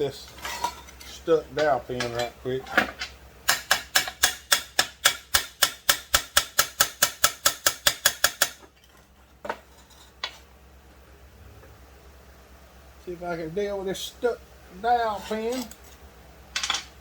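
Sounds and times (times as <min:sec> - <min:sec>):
hammer tapping metal: 0:03.5 - 0:08.6.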